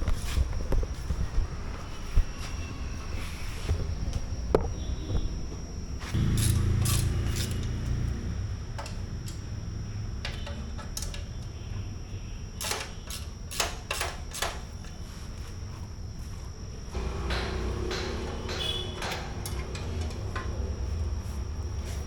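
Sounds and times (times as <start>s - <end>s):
metallic clicks of hand tools: 12.6s - 14.6s.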